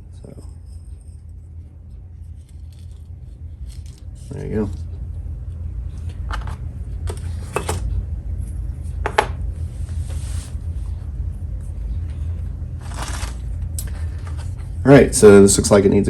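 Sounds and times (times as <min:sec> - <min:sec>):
steady low hum: 0:00.0 - 0:16.0
scraping rustle: 0:12.8 - 0:14.6.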